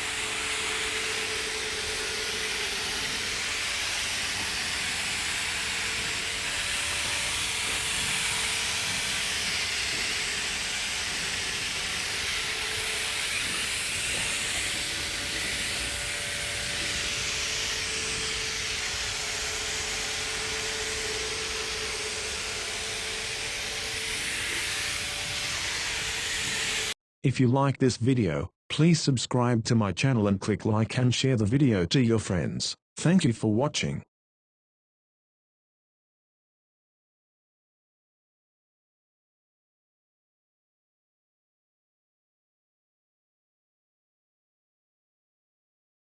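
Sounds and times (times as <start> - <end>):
pressure washer water jets hissing: 0.0 - 27.0.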